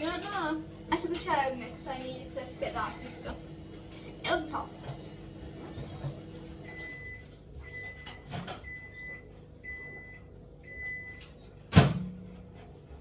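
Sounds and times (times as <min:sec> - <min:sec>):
microwave oven hum: 0:00.0 - 0:13.0
loud clunk: 0:11.7 - 0:12.2.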